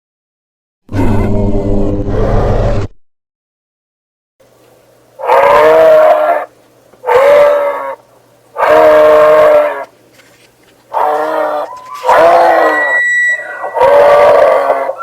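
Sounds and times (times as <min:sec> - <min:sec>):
monster calls with whistle-like tone: 0:11.4 - 0:15.0.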